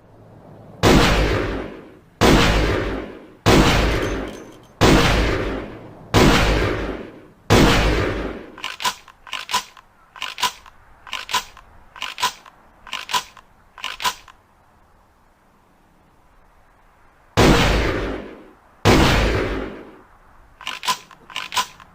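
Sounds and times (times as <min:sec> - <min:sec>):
shotgun blast: 0:00.8 - 0:09.0, 0:17.4 - 0:19.9
shotgun pump clicks: 0:08.6 - 0:14.4, 0:20.6 - 0:21.9.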